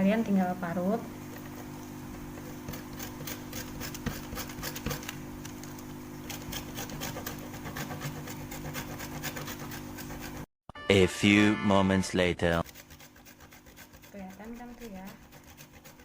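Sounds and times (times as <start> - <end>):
hand grater rasping: 2.4 - 5.2, 6.3 - 10.5, 12.6 - 16.0.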